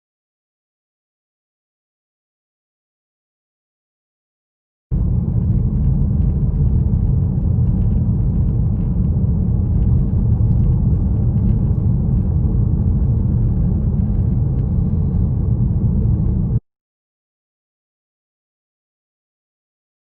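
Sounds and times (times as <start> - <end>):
car road rumble from inside: 4.9 - 16.6.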